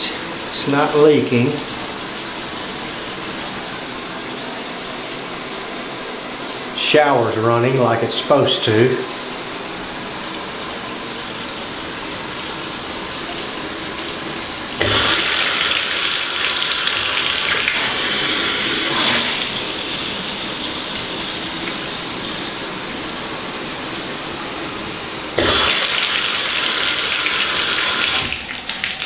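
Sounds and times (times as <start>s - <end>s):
shower head spraying water: 0.0s - 29.0s.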